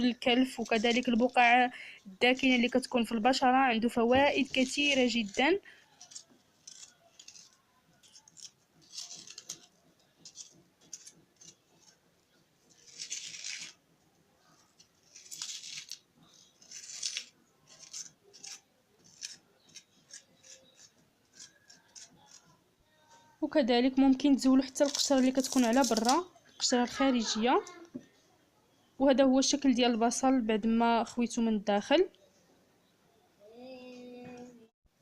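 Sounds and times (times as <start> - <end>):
knife cutting onion: 4.3 - 12.0, 12.7 - 13.8, 14.7 - 22.6
scraping out onion: 4.4 - 12.0, 12.6 - 13.8, 14.5 - 22.6.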